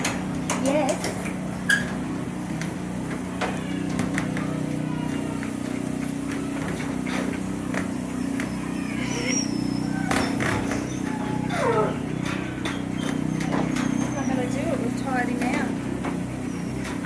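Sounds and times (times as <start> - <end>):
low mechanical hum: 0.0 - 17.0
brief high squeaks: 1.6 - 2.0, 8.4 - 11.9.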